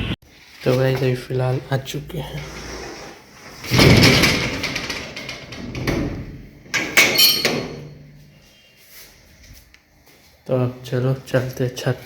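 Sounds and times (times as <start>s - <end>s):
door scraping rush: 2.0s - 6.6s
sharp rattling clatter: 3.6s - 6.2s.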